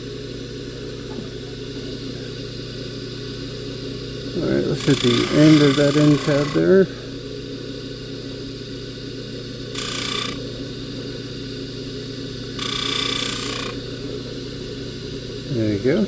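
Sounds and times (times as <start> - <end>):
polishing motor running: 4.2 - 7.2, 9.3 - 11.9, 12.5 - 16.0
chain hissing against buffing wheel: 4.4 - 6.8, 9.7 - 10.4, 12.6 - 13.8.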